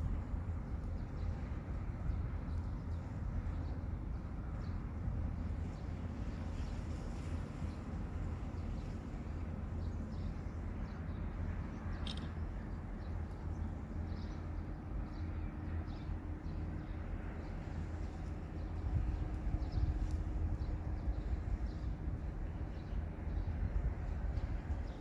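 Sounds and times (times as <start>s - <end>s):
faint bird chirps: 11.8s - 12.4s.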